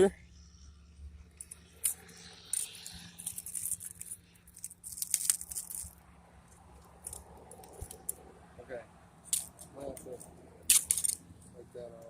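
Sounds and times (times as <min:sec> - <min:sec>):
broken glass clinking and crunching: 0:02.6 - 0:06.0.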